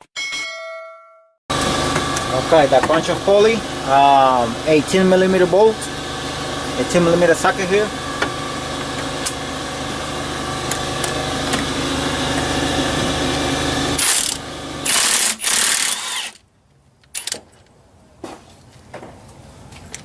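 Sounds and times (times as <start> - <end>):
impact wrench hammering bolt: 14.0 - 16.4.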